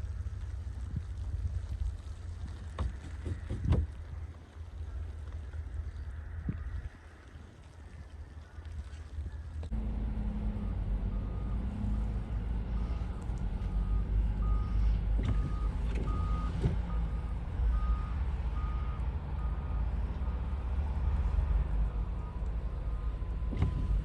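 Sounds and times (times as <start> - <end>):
engine and road rumble: 0.0 - 24.0
vehicle backup alarm beeping: 9.7 - 24.0.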